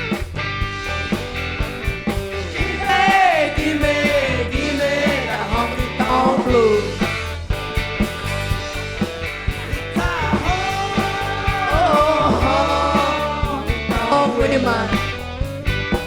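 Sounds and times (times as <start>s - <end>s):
rock and roll band playing: 0.0s - 16.0s
steady drum beat: 0.0s - 16.0s
person singing long sliding notes: 10.0s - 15.2s.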